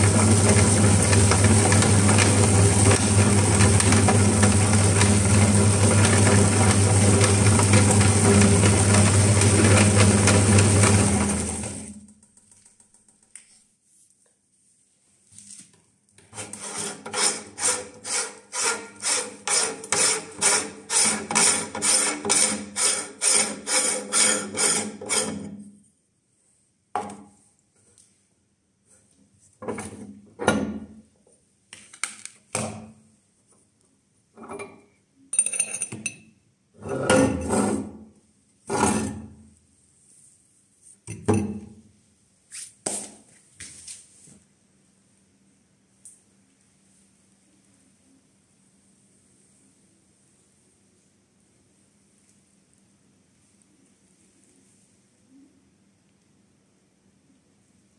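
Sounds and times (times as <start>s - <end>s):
meat grinder grinding and creaking: 0.0s - 12.0s.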